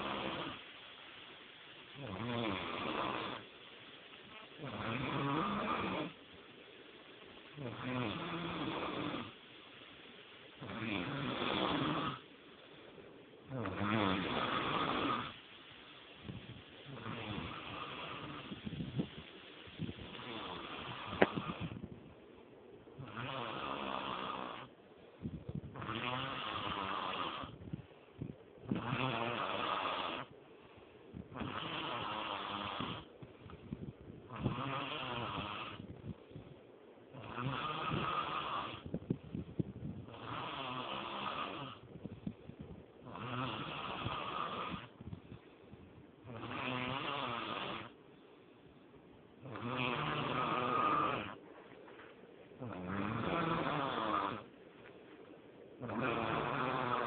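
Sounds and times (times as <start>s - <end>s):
person snoring with rattle: 0.0s - 0.7s, 2.0s - 3.5s, 4.6s - 6.2s, 7.6s - 9.4s, 10.6s - 12.2s, 13.5s - 15.4s, 16.2s - 19.1s, 19.8s - 21.9s, 23.0s - 30.3s, 31.2s - 36.4s, 37.1s - 45.4s, 46.2s - 48.0s, 49.4s - 51.4s, 52.6s - 54.5s, 55.8s - 57.0s
quiet breathing: 0.0s - 57.0s.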